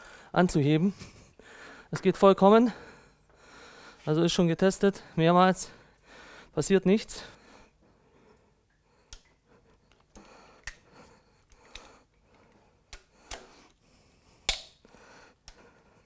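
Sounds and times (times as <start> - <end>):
metallic clicks of hand tools: 14.5 - 14.8.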